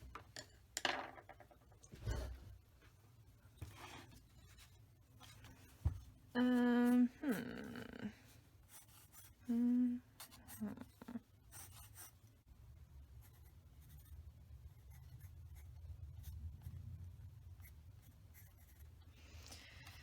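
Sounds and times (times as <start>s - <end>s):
person humming: 6.4s - 8.2s, 9.4s - 11.2s
pencil scratching on paper: 8.6s - 9.4s, 10.2s - 12.2s, 13.2s - 19.0s.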